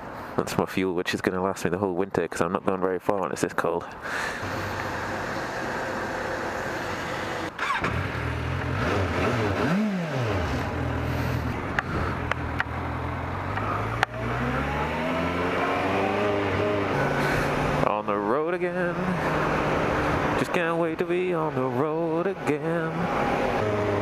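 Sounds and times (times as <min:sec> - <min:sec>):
motorcycle engine revving: 0:04.4 - 0:17.9, 0:18.9 - 0:24.0.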